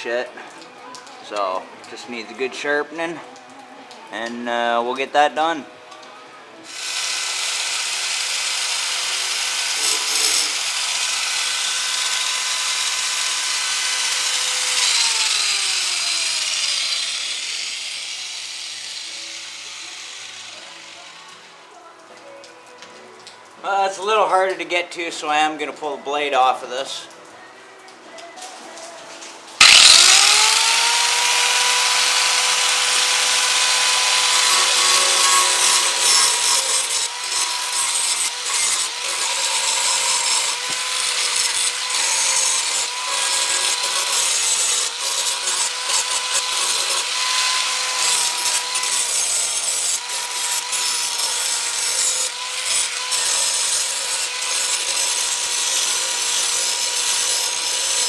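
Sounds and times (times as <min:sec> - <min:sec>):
electric grinder grinding steel: 0:06.7 - 0:21.8, 0:29.6 - 0:58.0.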